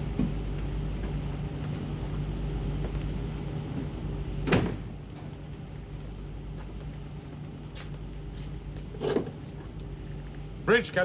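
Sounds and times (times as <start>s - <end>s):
steady low hum: 0.0s - 11.0s
door shutting with heavy thud: 4.4s - 4.9s.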